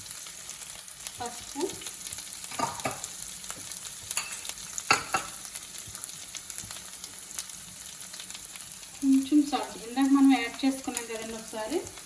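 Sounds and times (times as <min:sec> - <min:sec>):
onions sizzling in a pan: 0:00.0 - 0:12.0
spoon scraping and clinking pan: 0:04.1 - 0:05.4.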